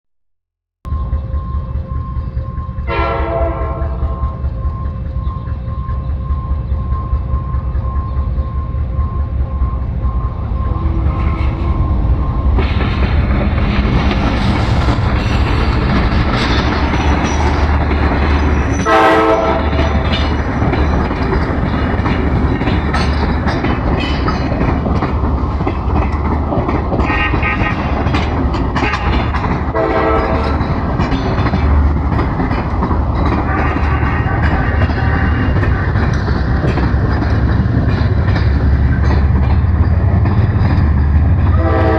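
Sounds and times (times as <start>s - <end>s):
train engine rumble: 0.9s - 41.9s
locomotive horn: 2.8s - 4.4s, 10.7s - 12.2s, 18.6s - 20.1s, 27.0s - 28.1s, 28.8s - 30.8s, 33.3s - 36.0s, 41.4s - 41.9s
wheel clatter on rails: 10.4s - 41.6s.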